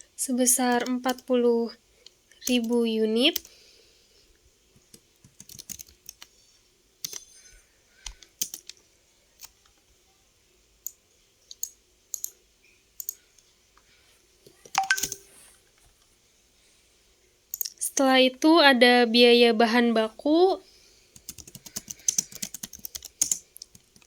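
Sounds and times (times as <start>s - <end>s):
computer keyboard typing: 0.7s - 1.3s, 2.4s - 3.6s, 4.8s - 6.3s, 7.0s - 7.3s, 8.0s - 8.8s, 10.8s - 12.4s, 13.0s - 13.2s, 14.7s - 15.3s, 21.2s - 24.0s.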